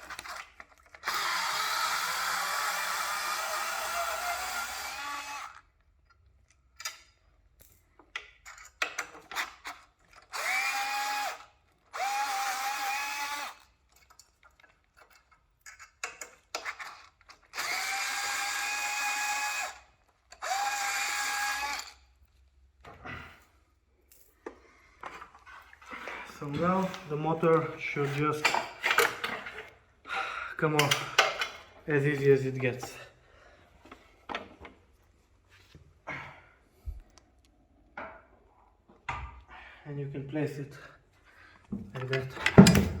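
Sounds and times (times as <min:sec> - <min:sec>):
cordless drill whining: 0:00.0 - 0:05.6, 0:10.2 - 0:13.7, 0:16.8 - 0:22.0
screws and parts clicking: 0:00.0 - 0:22.0.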